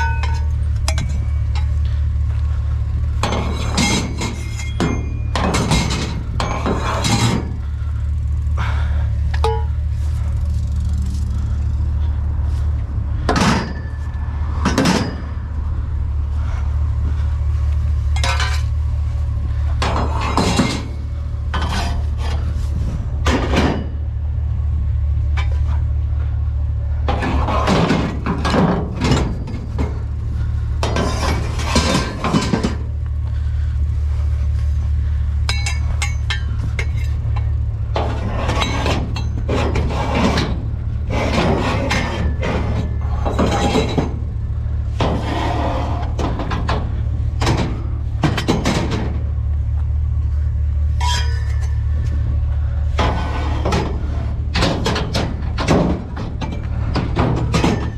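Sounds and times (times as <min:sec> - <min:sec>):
metal scrap clanking: 0:00.0 - 0:02.0, 0:03.2 - 0:08.0, 0:09.3 - 0:10.4, 0:13.2 - 0:15.6, 0:18.1 - 0:18.8, 0:19.8 - 0:24.2, 0:27.0 - 0:33.0, 0:35.4 - 0:49.4, 0:50.9 - 0:57.9
steady low rumble: 0:00.0 - 0:57.9.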